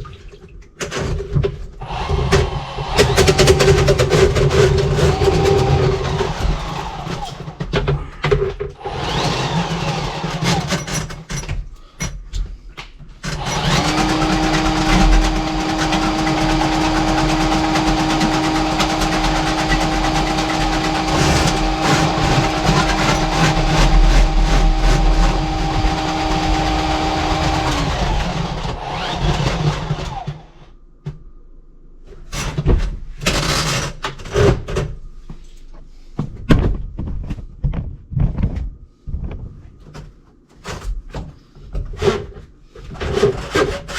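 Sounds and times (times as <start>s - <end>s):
knocks and clanks: 0.8s - 8.8s, 10.4s - 31.2s, 36.2s - 43.9s
power tool motor running: 1.8s - 7.6s, 8.8s - 10.9s, 13.2s - 30.7s.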